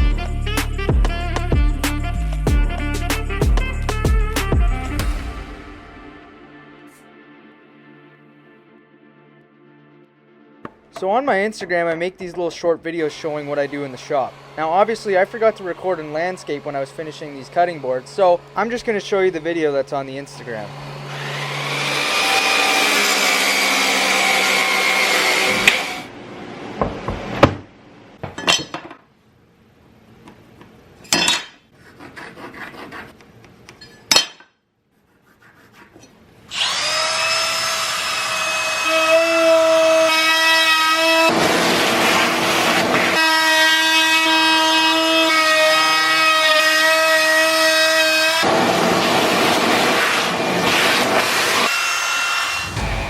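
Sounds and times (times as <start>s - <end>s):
loud power tool running: 13.2s - 18.6s, 20.5s - 26.1s, 36.5s - 44.9s, 48.0s - 53.0s
motor high whine: 52.2s - 53.0s.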